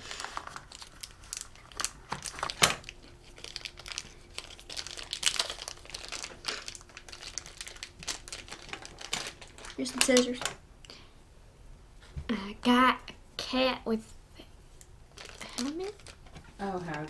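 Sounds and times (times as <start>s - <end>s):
plastic packaging crinkling: 0.0s - 10.6s, 15.1s - 17.0s.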